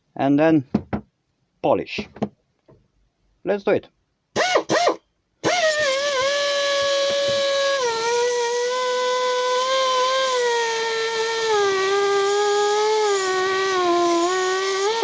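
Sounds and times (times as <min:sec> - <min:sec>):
power tool whine: 0:04.4 - 0:15.0
hiss: 0:05.5 - 0:15.0.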